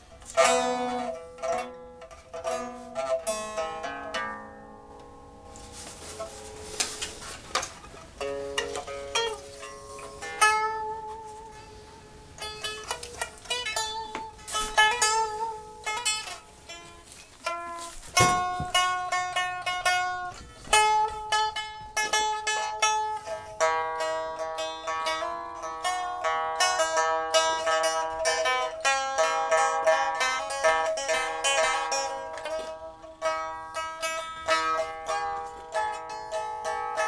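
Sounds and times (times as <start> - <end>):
plucked string instrument music: 0.0 - 37.0.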